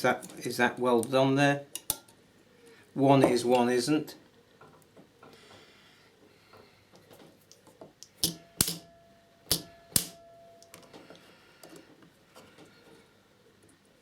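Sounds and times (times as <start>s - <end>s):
spot welder cracks: 8.0s - 8.9s, 9.5s - 10.2s
faint steady tone: 8.3s - 14.0s.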